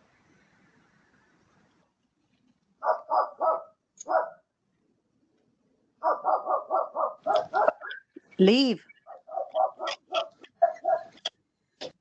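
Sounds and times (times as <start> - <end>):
dog barking: 2.8 - 4.5, 6.0 - 7.9, 9.1 - 11.2.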